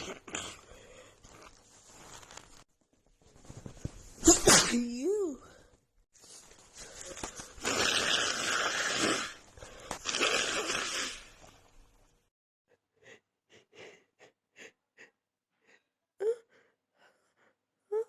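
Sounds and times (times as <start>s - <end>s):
person blowing nose: 7.6s - 11.5s.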